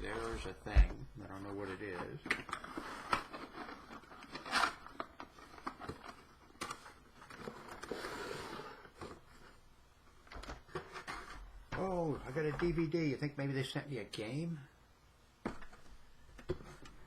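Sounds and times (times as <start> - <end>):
packaging rustling: 2.2 - 9.3
packaging clicks and scrapes: 2.3 - 9.6.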